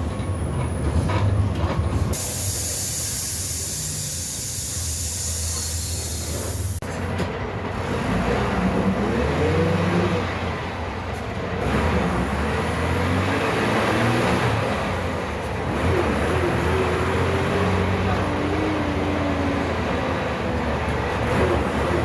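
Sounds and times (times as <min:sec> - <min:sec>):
bus engine running: 0:00.0 - 0:22.0
hiss: 0:02.1 - 0:06.8.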